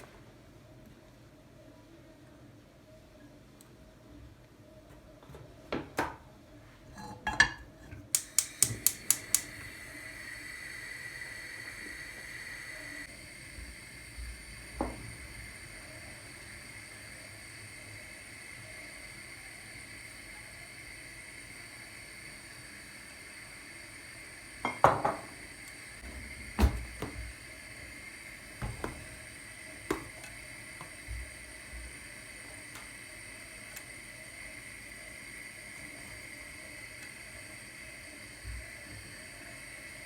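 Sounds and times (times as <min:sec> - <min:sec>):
steady high hum: 0:08.0 - 0:40.0
kitchenware knocking and clinking: 0:24.7 - 0:25.3.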